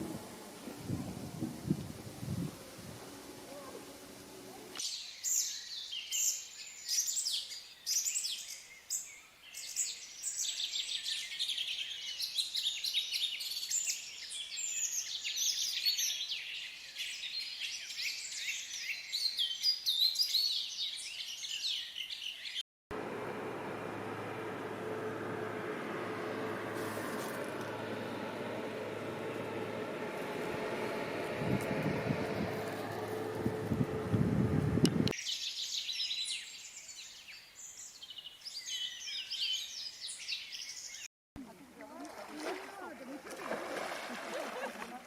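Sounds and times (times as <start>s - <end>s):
steady hiss with low hum: 0.0s - 4.8s.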